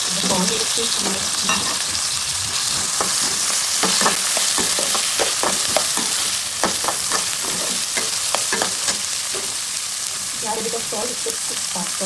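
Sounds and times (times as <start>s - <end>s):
vegetables sizzling in hot oil: 0.0s - 12.0s
spatula tapping against pan: 3.0s - 9.6s.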